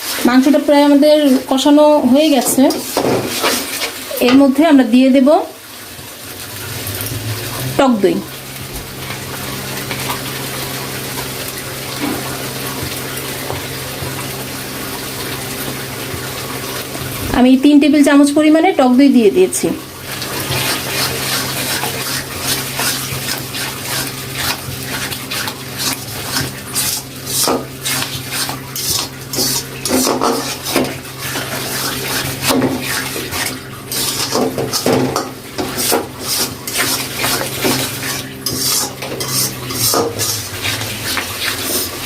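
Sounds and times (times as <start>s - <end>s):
steady low hum: 5.9s - 9.9s
spatula scraping and clinking a pan: 20.3s - 42.0s.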